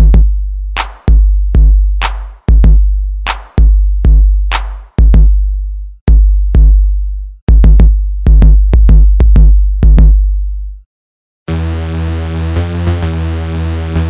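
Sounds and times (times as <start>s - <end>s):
instrumental hip-hop beat: 0.0s - 10.2s.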